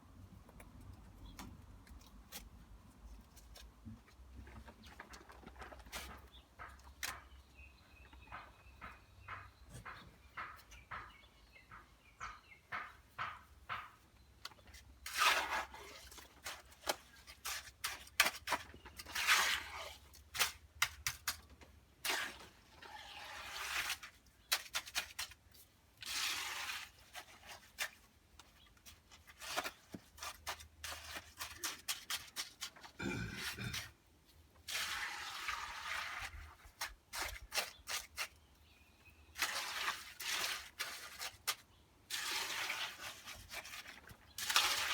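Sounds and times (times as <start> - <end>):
sharp knocks and clicks: 8.1 - 14.6
tools scraping wet concrete: 12.7 - 44.9.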